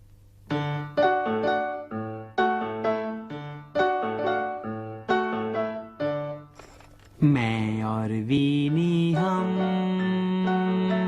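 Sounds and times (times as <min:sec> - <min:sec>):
bouncy piano melody: 0:00.5 - 0:06.6, 0:07.2 - 0:11.0.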